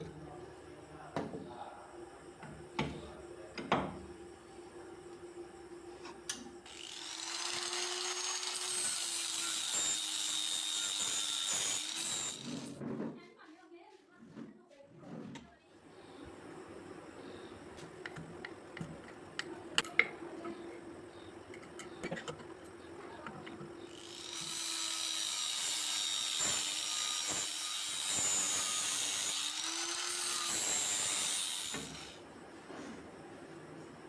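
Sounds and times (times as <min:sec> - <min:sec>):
electric power tool running: 0:06.7 - 0:12.8, 0:23.9 - 0:32.2
steel grinding hiss: 0:06.7 - 0:12.8, 0:23.9 - 0:32.2.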